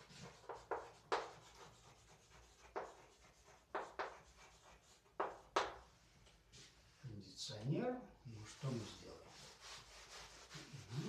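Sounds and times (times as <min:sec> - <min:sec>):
pen scratching strokes: 0:00.0 - 0:05.9.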